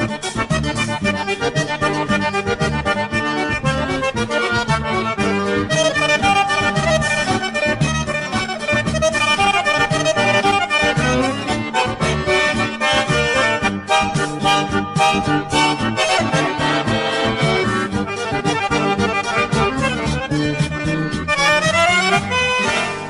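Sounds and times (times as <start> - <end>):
accordion music with steady beat: 0.0 - 23.0.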